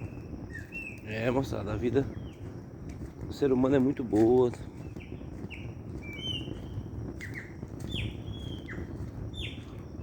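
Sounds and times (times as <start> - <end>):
songbirds whistling: 0.0 - 2.5, 4.6 - 10.0.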